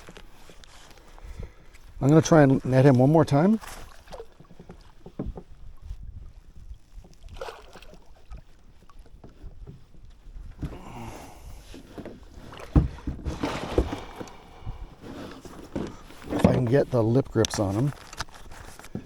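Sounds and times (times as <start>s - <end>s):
water splashing: 2.3s - 5.2s, 7.0s - 9.1s, 10.7s - 17.0s
knocks against kayak: 4.7s - 5.5s, 11.9s - 14.4s
wind rumble on microphone: 4.9s - 15.1s.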